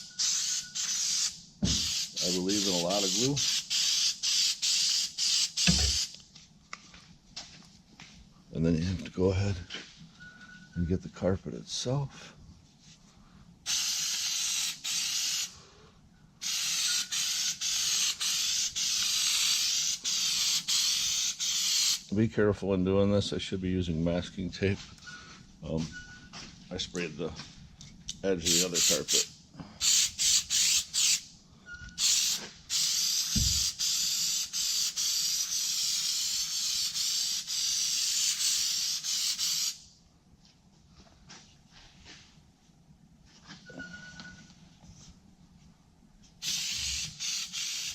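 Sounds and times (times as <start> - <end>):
aerosol spray can hissing: 0.2 - 6.2, 13.7 - 15.5, 16.4 - 22.0, 28.5 - 31.2, 32.0 - 39.8, 46.4 - 47.9.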